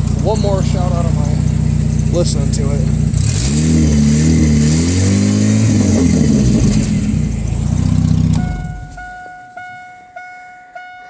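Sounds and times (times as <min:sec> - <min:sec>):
pickup engine revving: 0:00.0 - 0:09.2
keyboard-like musical note: 0:08.4 - 0:11.0.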